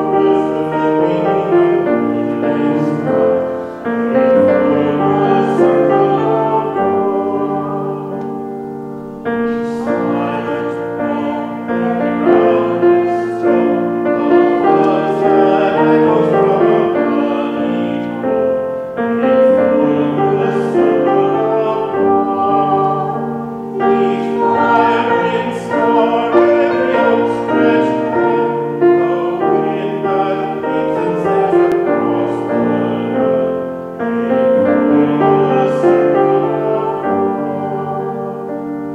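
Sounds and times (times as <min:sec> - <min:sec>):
person singing: 0:00.0 - 0:08.5, 0:09.3 - 0:18.6, 0:19.2 - 0:38.9
piano accompaniment: 0:00.0 - 0:38.9.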